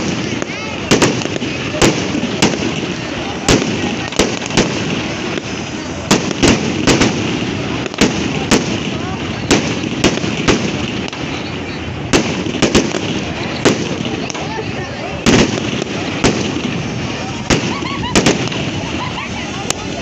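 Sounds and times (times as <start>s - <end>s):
bonfire flames rushing: 0.0s - 20.0s
murmur of voices: 0.0s - 20.0s.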